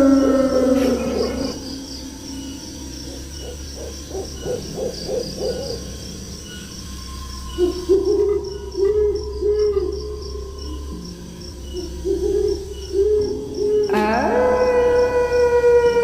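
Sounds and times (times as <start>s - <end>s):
night insects chirping: 0.0s - 16.0s
owl hooting: 2.8s - 6.0s, 7.5s - 16.0s.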